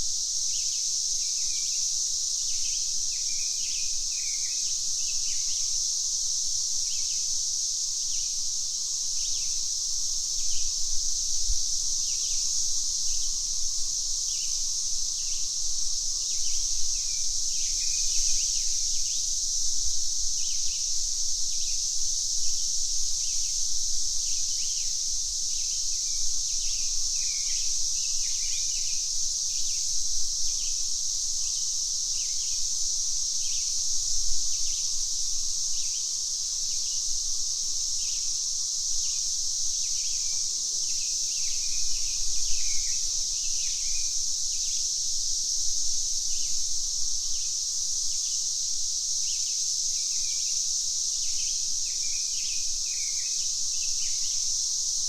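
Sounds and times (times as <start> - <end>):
cicadas droning: 0.0 - 55.0.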